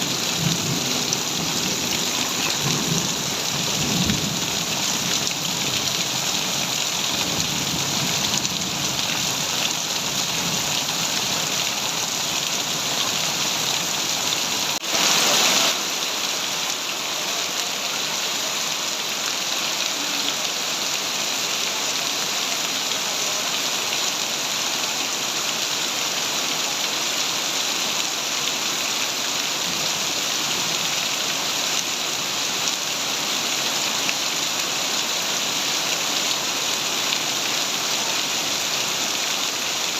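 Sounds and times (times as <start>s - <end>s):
heavy rain on surfaces: 0.0s - 39.9s.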